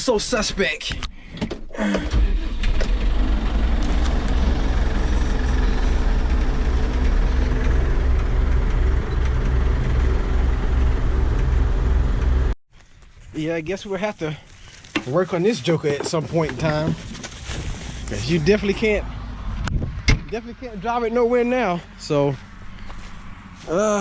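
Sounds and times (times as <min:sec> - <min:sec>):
vehicle engine running: 0:02.5 - 0:12.6, 0:15.9 - 0:24.0.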